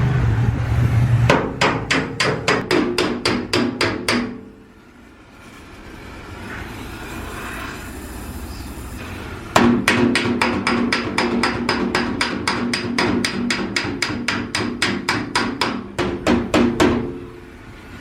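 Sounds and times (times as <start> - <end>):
hammer tapping on steel panel: 1.3 - 4.5, 9.6 - 17.3.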